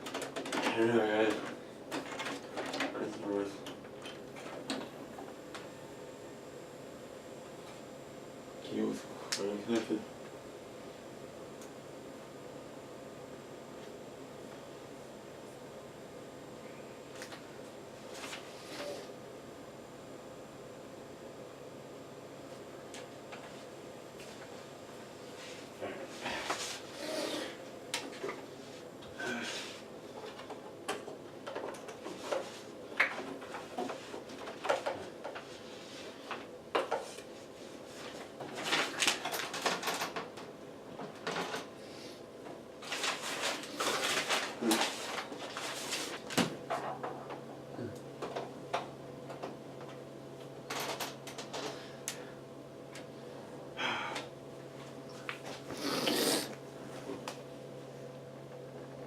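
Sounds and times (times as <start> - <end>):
computer parts clicking and rustling: 0.0 - 5.7, 30.2 - 35.6, 38.0 - 41.7, 42.8 - 47.5, 48.2 - 52.2
steady low hum: 0.0 - 59.0.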